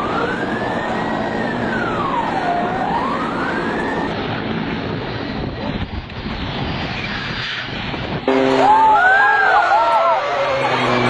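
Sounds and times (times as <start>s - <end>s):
emergency siren wailing: 0.0s - 4.2s, 8.3s - 11.0s
steady rushing noise: 0.0s - 11.0s.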